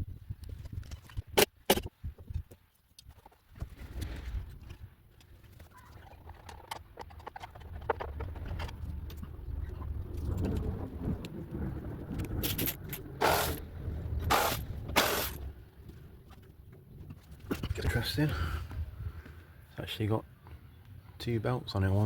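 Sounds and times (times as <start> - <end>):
hand tools clicking and knocking: 12.2 - 13.6, 14.3 - 15.4
loud hissing bursts: 13.2 - 13.6, 14.3 - 15.4.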